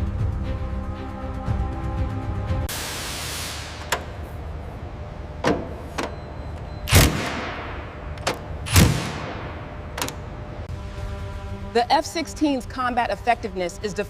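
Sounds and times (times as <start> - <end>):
steady low rumble: 7.0 - 14.0.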